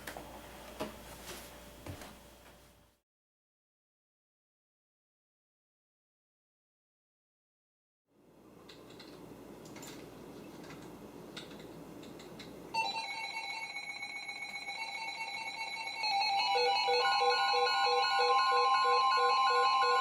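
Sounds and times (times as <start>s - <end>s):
electronic alarm beeps and chimes: 12.8s - 20.0s.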